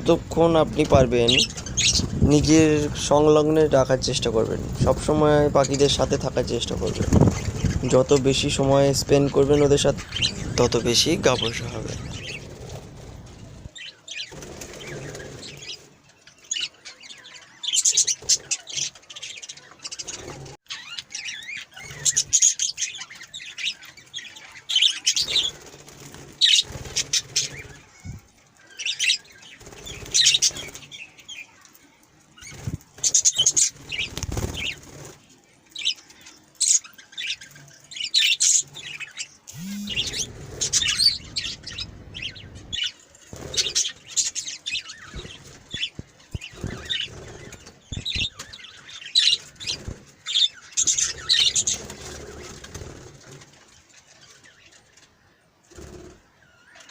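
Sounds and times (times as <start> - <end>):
budgerigars chirping: 0.0 - 15.8, 38.0 - 52.3
wings fluttering: 0.0 - 17.0, 17.7 - 20.6, 21.7 - 56.2.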